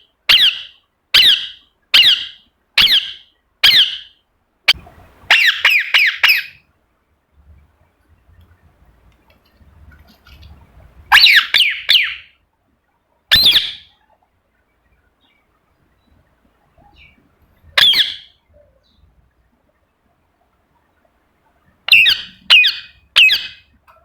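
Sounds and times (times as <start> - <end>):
parrot screeching: 0.3 - 4.1, 5.3 - 6.6, 11.1 - 12.3, 13.3 - 13.9, 17.8 - 18.3, 21.9 - 23.6.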